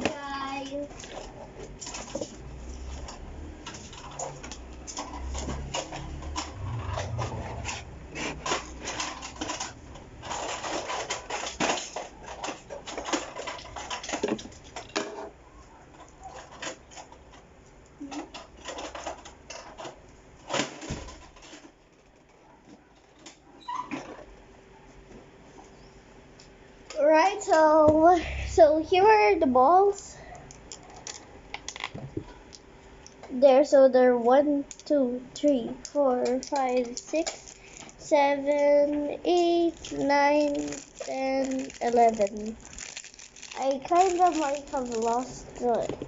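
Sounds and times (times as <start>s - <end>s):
plastic toy pieces clicking: 35.8s - 38.0s, 39.3s - 46.0s.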